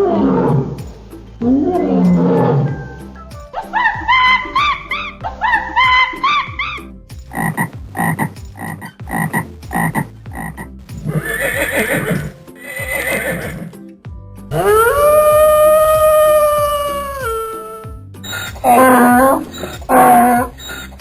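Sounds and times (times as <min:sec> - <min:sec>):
repeating pitched animal call: 0:00.0 - 0:00.8, 0:01.4 - 0:02.7, 0:03.6 - 0:13.7, 0:14.5 - 0:21.0
rough animal calls: 0:00.0 - 0:00.8, 0:03.6 - 0:13.7, 0:14.5 - 0:21.0
frog croaking: 0:03.7 - 0:13.7, 0:18.3 - 0:21.0.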